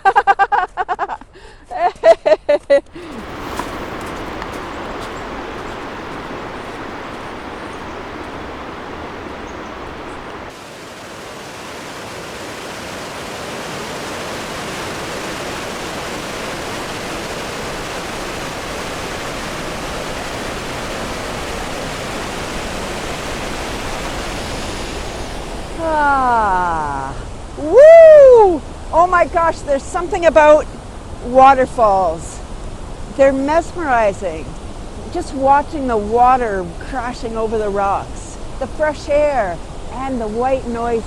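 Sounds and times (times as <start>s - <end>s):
waterfall rushing over rocks: 3.0s - 26.7s.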